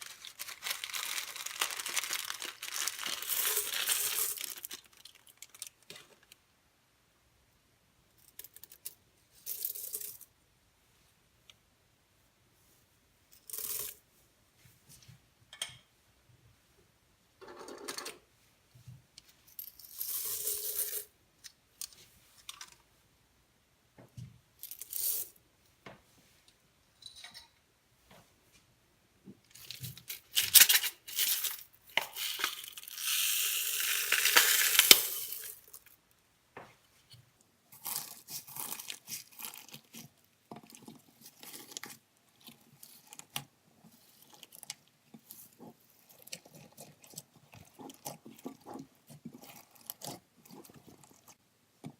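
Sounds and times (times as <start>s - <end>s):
slime squelching and crackling: 0.0s - 5.9s.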